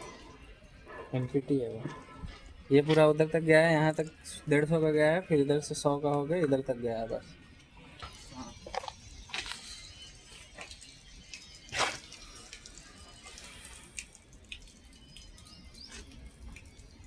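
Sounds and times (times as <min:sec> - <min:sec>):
water dripping and splashing: 0:08.0 - 0:17.0.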